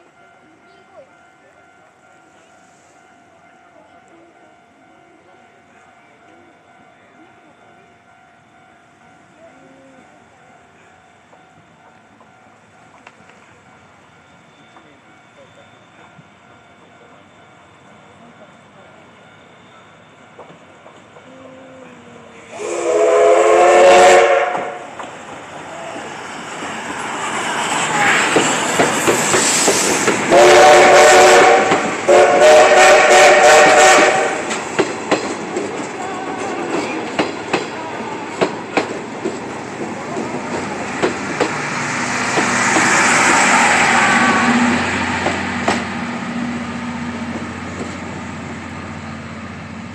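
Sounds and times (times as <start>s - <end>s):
steam locomotive passing: 0.0s - 49.9s
steam whistle blasts: 22.5s - 24.9s, 30.3s - 34.5s, 43.1s - 45.2s
wheels clicking over rail joints: 28.0s - 30.3s.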